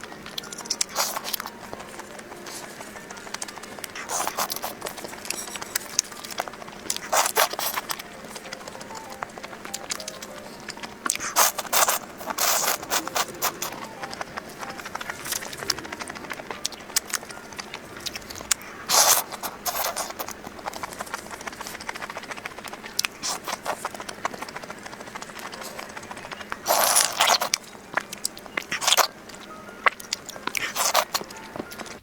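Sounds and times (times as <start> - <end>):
mouth clicks and chewing: 0.0 - 32.0
loud noodle slurps: 11.2 - 13.8, 18.0 - 20.3.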